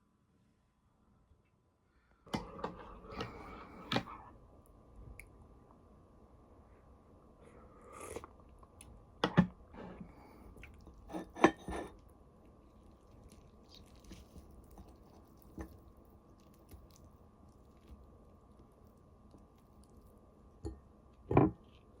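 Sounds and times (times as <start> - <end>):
person chewing and biting: 12.6 - 18.1.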